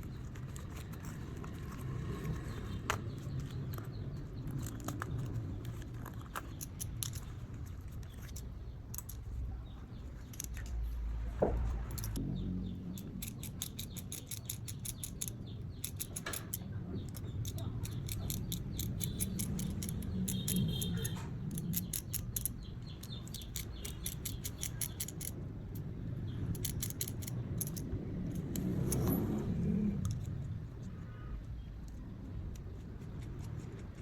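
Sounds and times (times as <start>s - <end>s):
small tools clicking: 0.0s - 12.2s, 12.9s - 34.0s
low hum: 10.6s - 15.6s.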